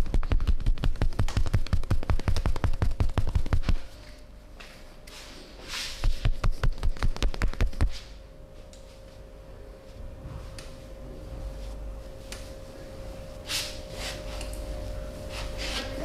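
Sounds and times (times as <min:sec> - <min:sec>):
hands rapidly striking body: 0:00.0 - 0:03.8, 0:06.0 - 0:08.0.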